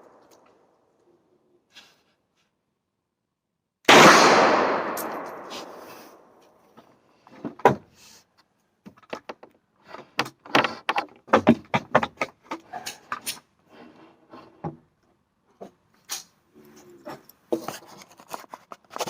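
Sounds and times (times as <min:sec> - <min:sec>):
rifle shot echo: 0:03.9 - 0:06.4
rifle handling clicks and clacks: 0:04.8 - 0:06.0.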